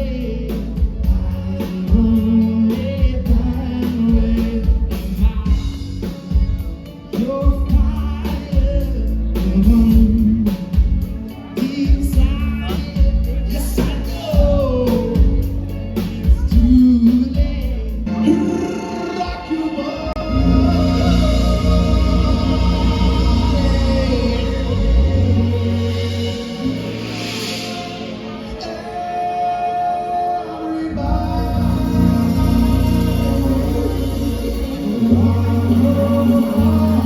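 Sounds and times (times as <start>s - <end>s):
pop song with singing: 0.0s - 37.0s
heavy bass beat: 20.2s - 26.6s, 31.1s - 37.0s.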